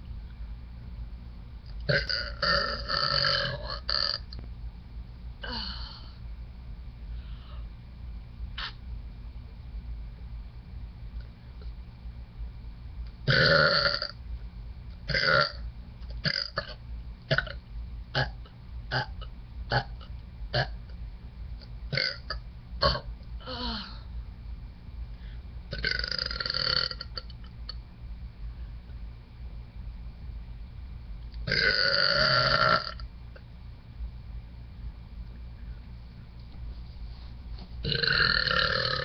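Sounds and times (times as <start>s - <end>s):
woman burping: 1.9s - 4.2s, 31.5s - 33.0s, 37.9s - 39.0s.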